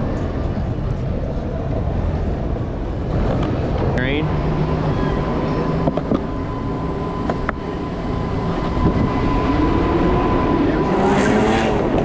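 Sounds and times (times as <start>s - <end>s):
skateboard wheels rolling on pavement: 0.0s - 12.0s
traffic: 0.0s - 12.0s
rising pitched sound: 2.7s - 12.0s.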